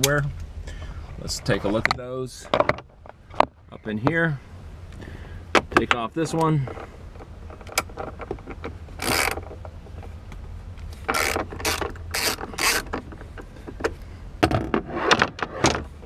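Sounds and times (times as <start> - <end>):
ratchet clicking: 9.0 - 9.4, 11.1 - 12.9.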